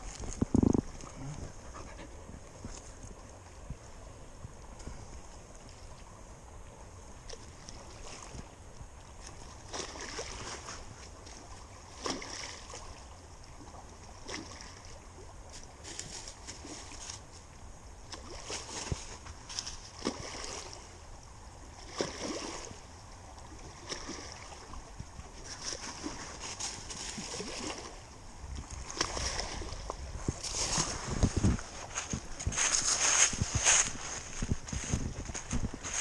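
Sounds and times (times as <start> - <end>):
footsteps crunching dry leaves: 30.4 - 36.0.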